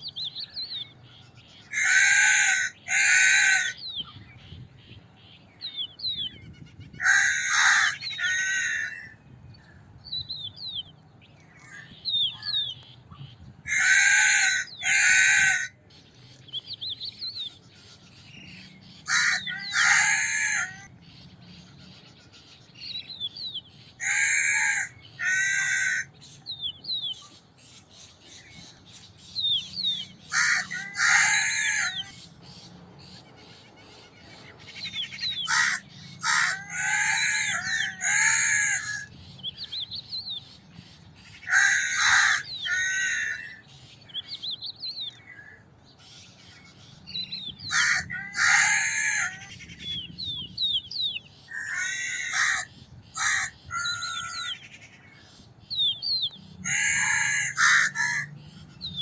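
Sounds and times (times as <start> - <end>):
crow cawing: 1.7 - 3.8, 7.0 - 9.2, 13.7 - 15.8, 19.0 - 20.9, 24.0 - 26.2, 30.3 - 32.1, 35.4 - 39.1, 41.5 - 43.6, 47.7 - 49.5, 51.5 - 54.6, 56.6 - 58.3.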